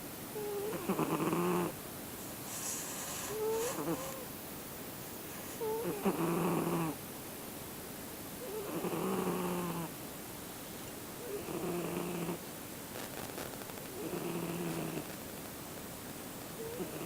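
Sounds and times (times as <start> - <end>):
cat snoring: 0.3 - 1.8, 2.5 - 4.3, 5.3 - 7.0, 8.4 - 9.9, 11.2 - 12.4, 13.9 - 15.1, 16.6 - 17.0.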